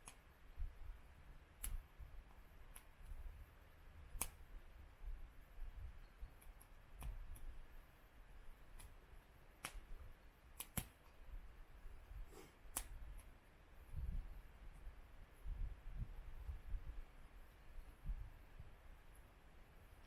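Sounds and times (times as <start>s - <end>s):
faint sharp clicks: 1.6s - 3.2s, 9.6s - 9.8s, 10.6s - 11.2s.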